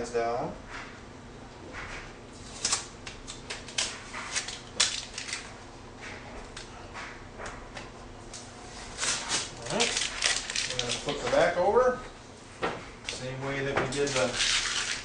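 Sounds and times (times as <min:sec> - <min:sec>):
tape crackling and ripping: 0:02.4 - 0:05.5, 0:08.9 - 0:11.4, 0:13.9 - 0:15.0.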